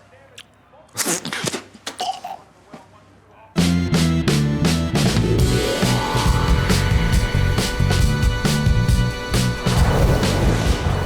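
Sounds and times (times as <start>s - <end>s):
film score with drums and guitar: 3.6s - 11.0s.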